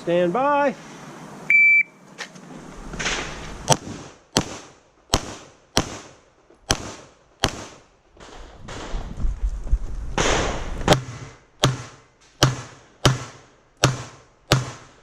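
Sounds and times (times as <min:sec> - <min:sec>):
pistol shots with echo: 0:03.7 - 0:08.8.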